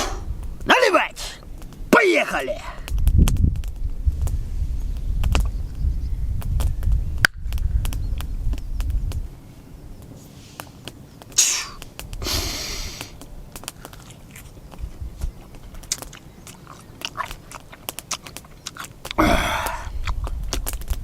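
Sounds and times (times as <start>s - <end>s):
person chewing with wet clicks: 13.0s - 21.0s.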